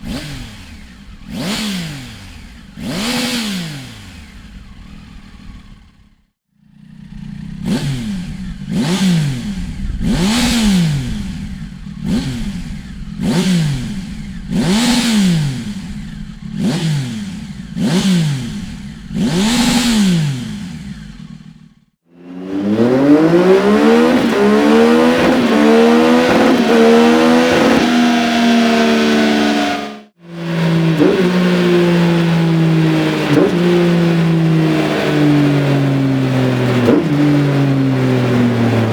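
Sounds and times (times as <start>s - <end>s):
motorcycle engine revving: 0.0s - 38.9s
motorcycle engine under load: 0.0s - 38.9s.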